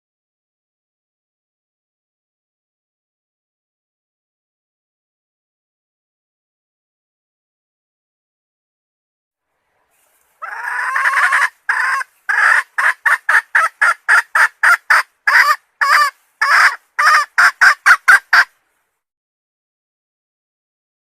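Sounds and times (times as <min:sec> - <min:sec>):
hen calling: 0:10.4 - 0:18.5.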